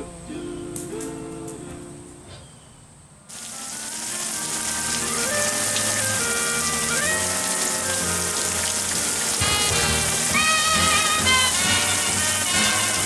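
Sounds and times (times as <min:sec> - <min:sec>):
steady hiss: 0:00.0 - 0:13.0
background music: 0:03.6 - 0:13.0.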